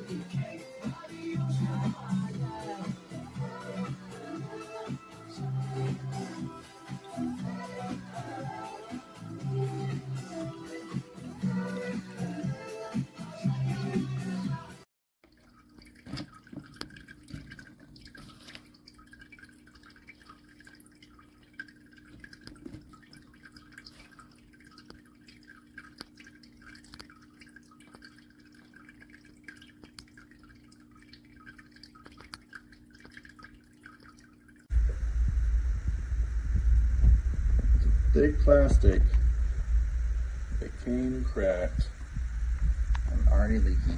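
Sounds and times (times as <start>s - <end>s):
water trickling and dripping: 0.0s - 12.4s, 15.2s - 34.9s
pump humming: 15.3s - 43.9s
loud low rumble: 34.7s - 43.9s.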